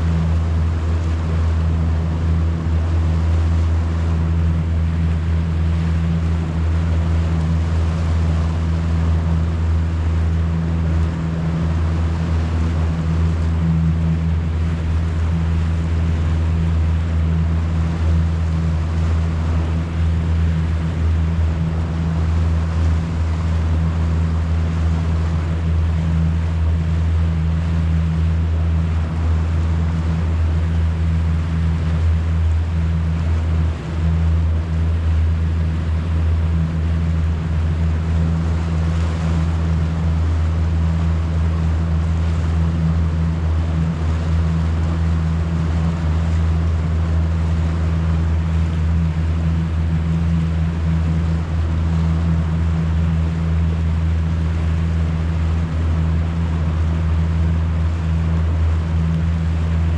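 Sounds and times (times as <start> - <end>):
boat motor droning: 0.0 - 59.9
water wash: 0.0 - 59.9.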